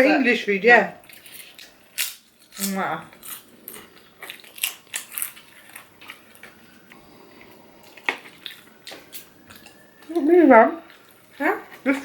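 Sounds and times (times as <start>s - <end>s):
crunchy bites and chewing: 1.0s - 10.0s.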